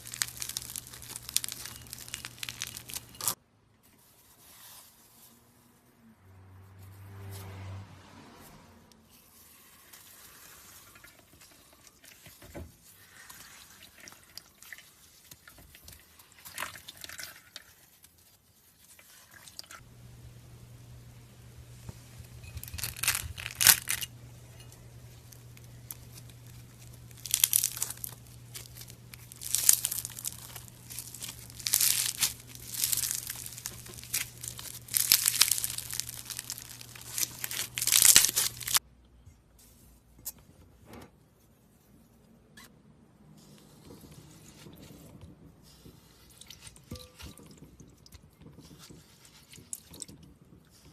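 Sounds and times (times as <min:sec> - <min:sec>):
soft material crackling and tearing: 0:00.0 - 0:06.0, 0:22.2 - 0:38.8.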